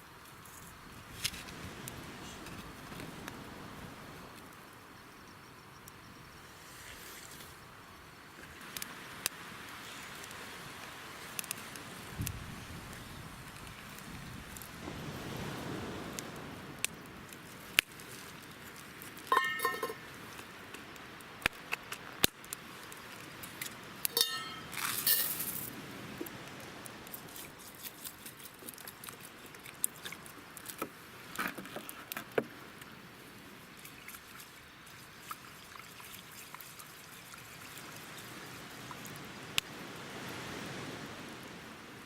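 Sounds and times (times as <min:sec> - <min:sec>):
cookware clinking: 0:19.3 - 0:20.0, 0:24.2 - 0:25.4.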